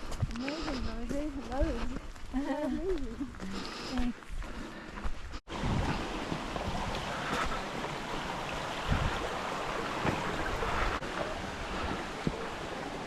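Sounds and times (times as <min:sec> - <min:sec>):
wind on microphone: 0:05.5 - 0:12.9.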